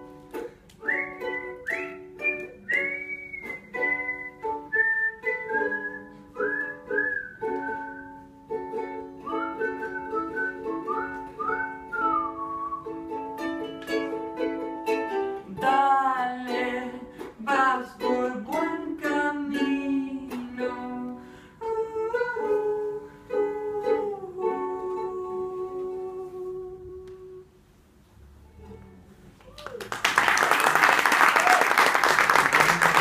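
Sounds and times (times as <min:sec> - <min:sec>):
ukulele strumming: 0:00.0 - 0:27.5
wordless vocal melody: 0:15.4 - 0:27.6.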